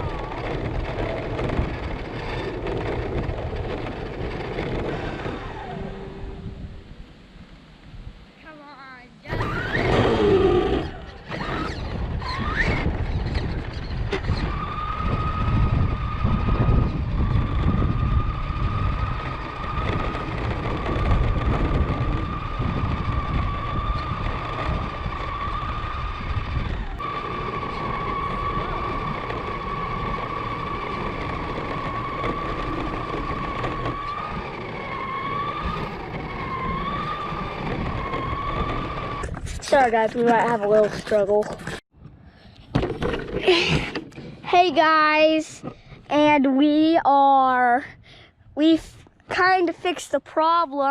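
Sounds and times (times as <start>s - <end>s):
tyres rumbling on road: 0.0s - 6.9s, 9.3s - 41.8s
high motor whine: 0.0s - 39.8s.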